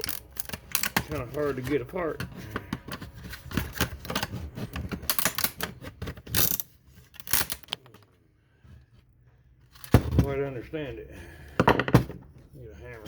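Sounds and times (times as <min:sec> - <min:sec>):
plastic housing clicking and cracking: 0:00.0 - 0:01.3, 0:04.8 - 0:08.1.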